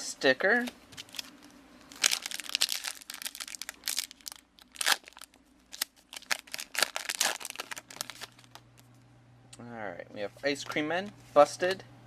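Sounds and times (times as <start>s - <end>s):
wrapper crinkling and tearing: 0.9s - 8.6s.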